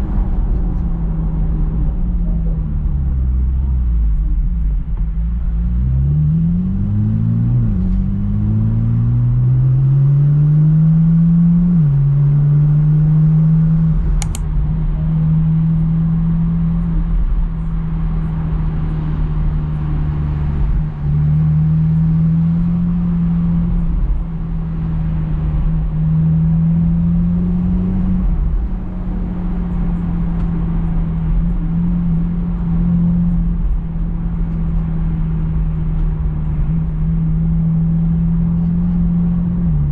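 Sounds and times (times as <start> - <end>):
sharp click: 14.2 - 14.4.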